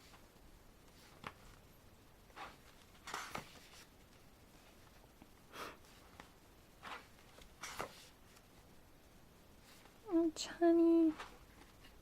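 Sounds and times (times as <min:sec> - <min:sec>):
paper pages rustling: 0:00.8 - 0:01.6, 0:02.3 - 0:05.0, 0:05.9 - 0:08.5.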